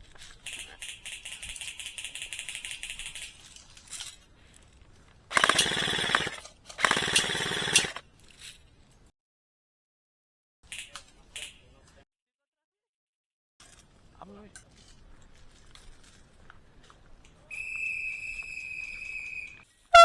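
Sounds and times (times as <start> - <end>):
airsoft rifle full-auto bursts: 5.3 - 8.1.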